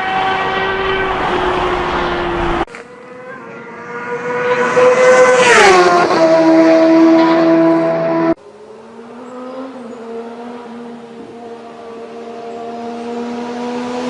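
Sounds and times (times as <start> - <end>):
steady engine note: 0.0 - 5.4
motorcycle passing at speed: 0.0 - 14.0.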